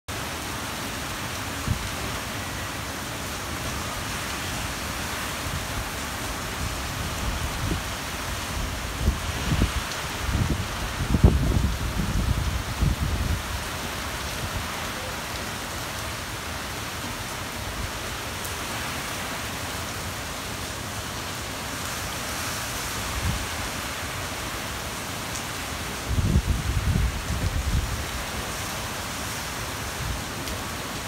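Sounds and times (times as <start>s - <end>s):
heavy wind-driven rain: 0.1s - 31.0s
low rumble of wind: 0.1s - 31.0s.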